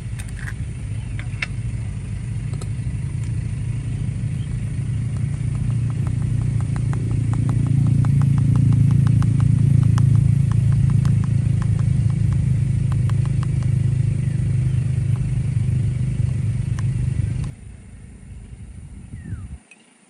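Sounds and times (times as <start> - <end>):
vehicle engine droning: 0.0 - 19.8.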